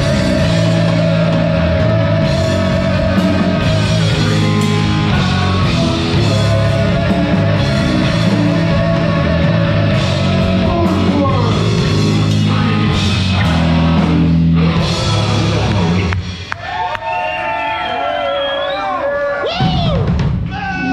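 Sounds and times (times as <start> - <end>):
heavy metal band playing live: 0.0 - 16.5.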